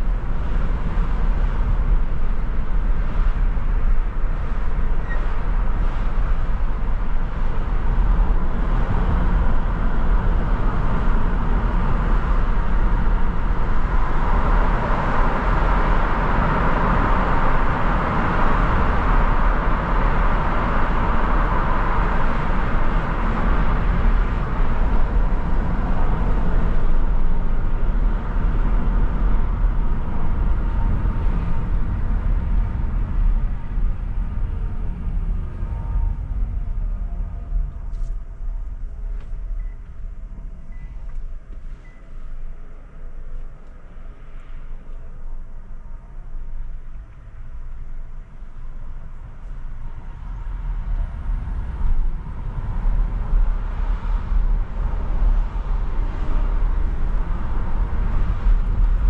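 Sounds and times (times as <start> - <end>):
car engine and road rumble: 0.0 - 59.0.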